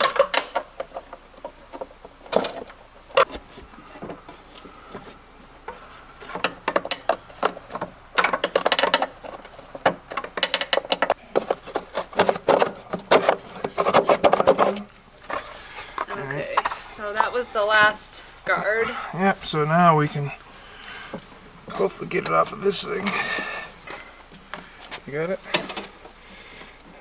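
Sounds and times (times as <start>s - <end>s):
hand tools clicking and rattling: 6.4s - 12.7s.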